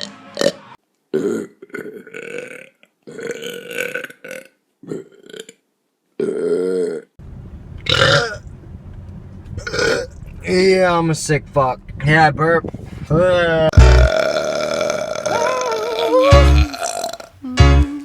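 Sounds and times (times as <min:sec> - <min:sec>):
person burping loudly: 0:00.0 - 0:05.6, 0:06.2 - 0:07.1, 0:07.9 - 0:08.4, 0:09.6 - 0:10.2, 0:13.8 - 0:17.8.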